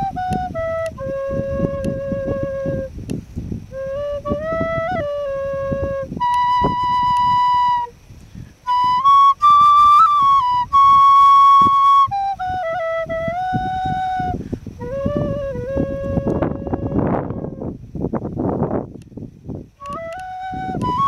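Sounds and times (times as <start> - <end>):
flute-toned wind instrument melody: 0.0 - 3.0, 3.6 - 8.0, 8.6 - 17.8, 19.8 - 21.0
scattered clicks: 19.8 - 21.0.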